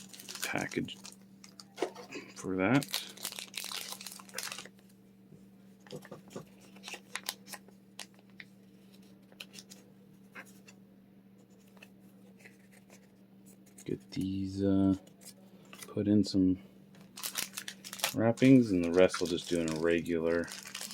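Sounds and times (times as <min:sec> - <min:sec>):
plastic packaging rustling: 0:00.0 - 0:02.0, 0:02.7 - 0:04.9, 0:05.8 - 0:10.6, 0:16.9 - 0:20.9
cards tapping and clicking: 0:05.8 - 0:07.6.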